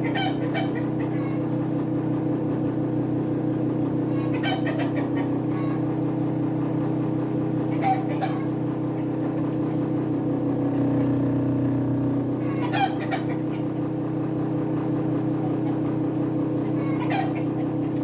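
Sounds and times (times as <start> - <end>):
chicken calling: 4.1 - 5.8, 12.4 - 13.8, 16.6 - 17.7
blower humming: 9.2 - 15.1.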